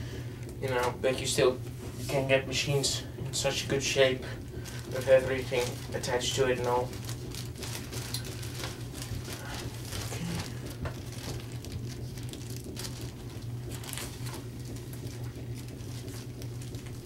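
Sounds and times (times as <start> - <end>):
steady low hum: 0.0 - 17.0
paper rustling: 4.6 - 17.0.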